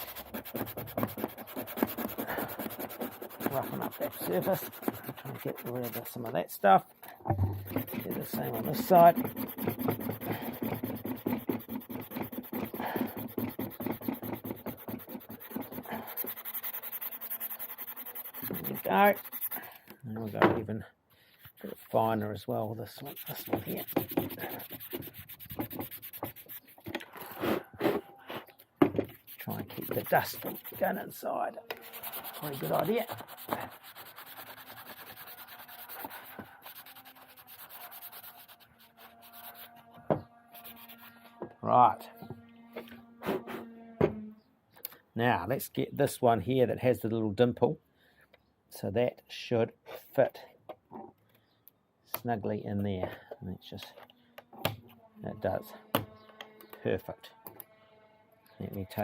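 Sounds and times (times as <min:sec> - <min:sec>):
sandpaper rubbing back and forth: 0:00.0 - 0:06.6, 0:07.6 - 0:20.4, 0:21.3 - 0:28.5, 0:29.1 - 0:41.4, 0:58.7 - 0:59.0.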